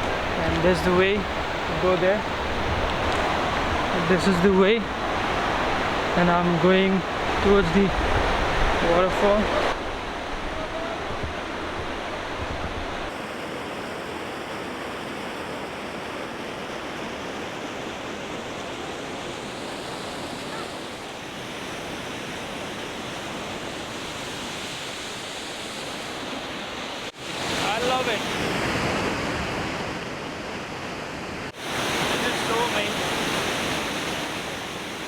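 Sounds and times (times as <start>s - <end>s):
waterfall rushing: 0.0s - 13.1s, 27.2s - 28.4s, 31.5s - 34.8s.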